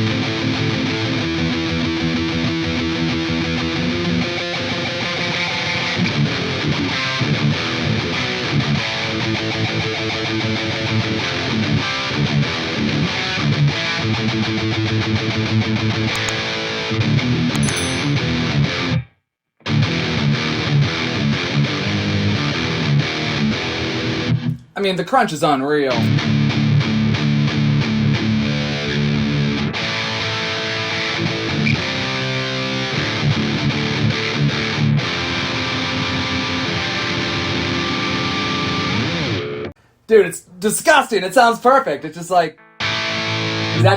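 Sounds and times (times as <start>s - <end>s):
distorted electric guitar: 26.1s - 39.7s, 42.6s - 43.9s
distorted electric guitar riff: 42.6s - 43.9s.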